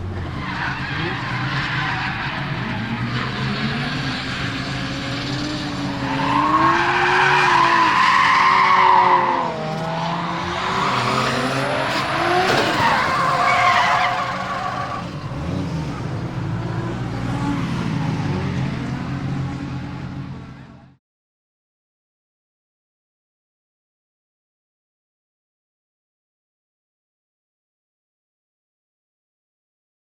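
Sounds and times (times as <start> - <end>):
car engine revving: 0.0 - 20.6
tyres squealing: 10.4 - 15.2.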